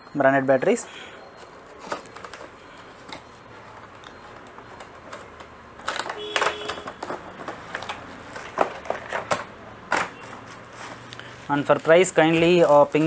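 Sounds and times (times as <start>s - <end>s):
laptop plastic parts clicking: 1.4s - 11.2s.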